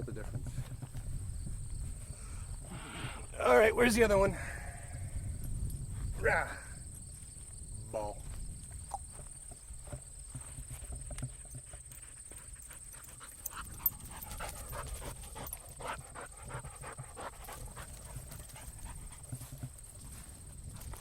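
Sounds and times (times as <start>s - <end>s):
dog panting: 11.2s - 20.2s.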